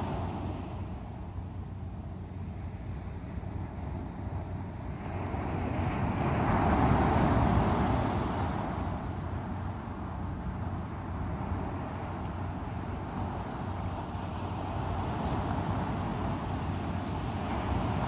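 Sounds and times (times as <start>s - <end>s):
wave breaking and washing in: 0.0s - 1.2s, 4.8s - 18.0s
steady surf noise: 0.0s - 18.0s.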